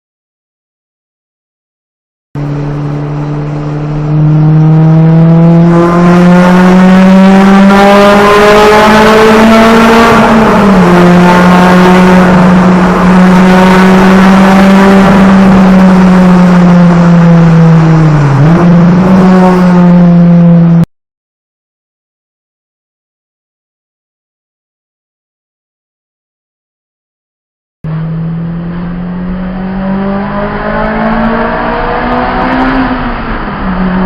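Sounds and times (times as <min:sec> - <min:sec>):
car engine accelerating: 0:02.4 - 0:20.9, 0:27.9 - 0:34.0.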